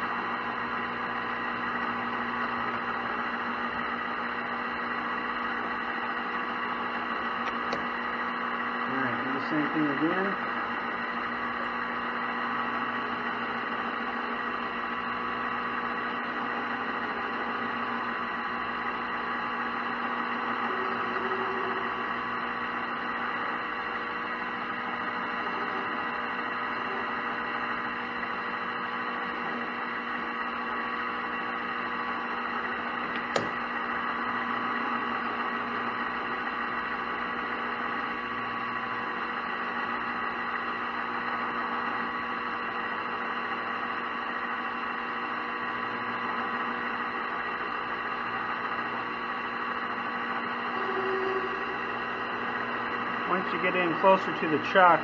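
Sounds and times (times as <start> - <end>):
metal lathe cutting copper: 0.0 - 55.0
sharp click: 7.4 - 7.9, 33.1 - 33.6.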